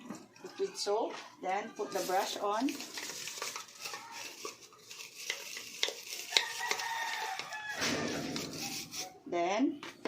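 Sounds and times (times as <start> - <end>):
bottle brush scrubbing inside bottle: 1.8 - 9.2
rooster crowing: 6.3 - 8.4.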